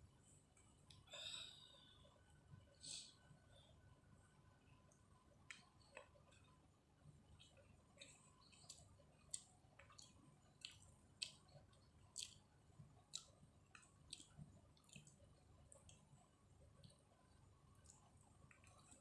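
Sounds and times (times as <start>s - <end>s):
person chewing food: 4.9s - 19.0s.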